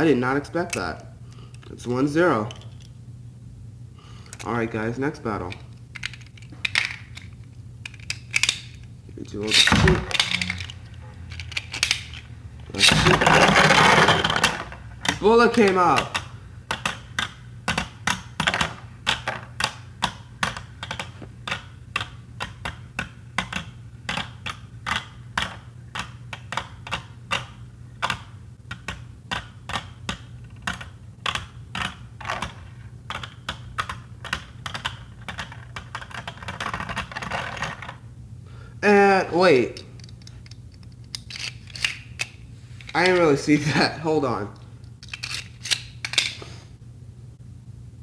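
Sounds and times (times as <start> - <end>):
spinning tops clashing: 9.4 - 12.2.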